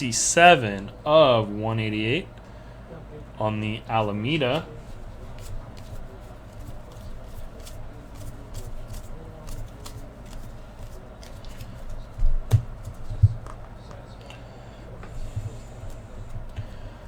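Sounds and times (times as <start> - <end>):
trading cards clicking and rustling: 4.5 - 14.0
dull thumps: 12.1 - 13.8.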